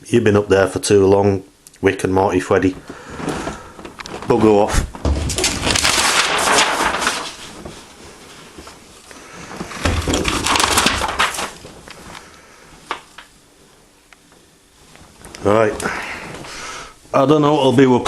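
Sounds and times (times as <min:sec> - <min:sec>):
paper poster tearing: 0:04.3 - 0:07.6, 0:10.1 - 0:11.6.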